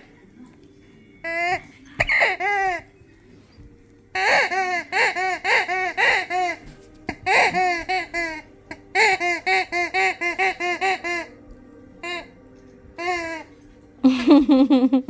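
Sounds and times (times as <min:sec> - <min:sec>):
rubber squeaky toy squeaking: 0:01.2 - 0:02.9, 0:04.2 - 0:11.4, 0:12.0 - 0:12.4, 0:13.0 - 0:13.6.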